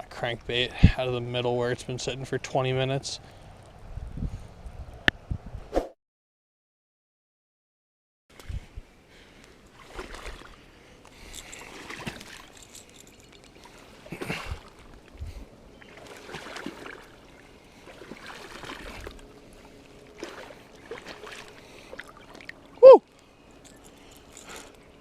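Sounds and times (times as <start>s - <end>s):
person wading through water: 9.2s - 24.8s.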